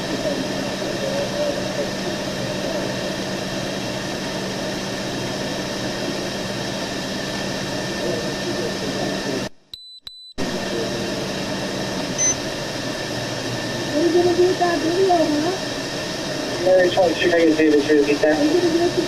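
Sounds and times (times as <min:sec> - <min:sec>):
steady hiss and rumble: 0:00.0 - 0:09.5, 0:10.4 - 0:19.0
short high beeps: 0:12.2 - 0:12.4.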